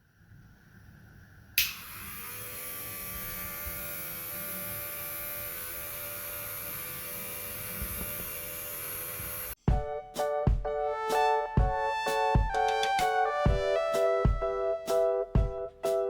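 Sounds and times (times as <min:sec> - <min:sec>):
small fan motor humming: 0:01.5 - 0:09.6
fan switch click: 0:01.6 - 0:02.0.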